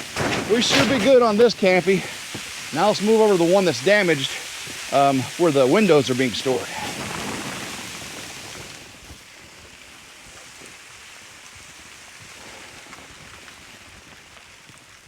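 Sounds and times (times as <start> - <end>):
sleet hissing: 0.0 - 8.7.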